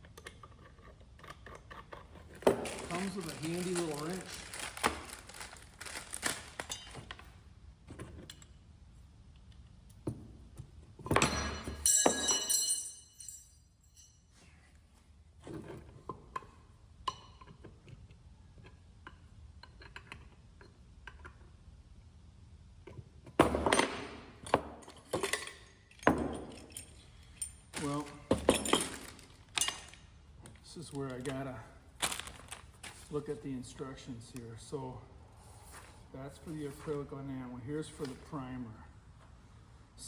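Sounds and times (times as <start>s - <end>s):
metal parts clinking and knocking: 2.3s - 7.3s, 11.1s - 14.2s, 23.7s - 30.1s.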